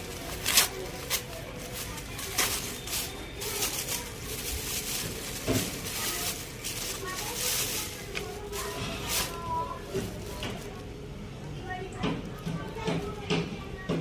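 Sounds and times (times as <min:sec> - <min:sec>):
sharp crackles: 0:00.0 - 0:10.8
packaging crinkling and rustling: 0:00.0 - 0:11.0.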